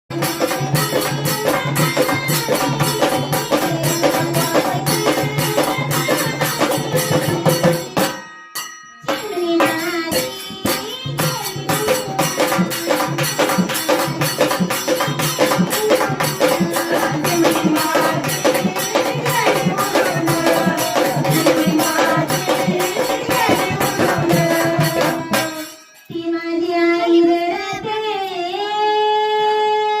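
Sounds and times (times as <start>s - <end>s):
drum and rattle percussion: 0.1s - 26.4s
folk singing: 15.9s - 30.0s.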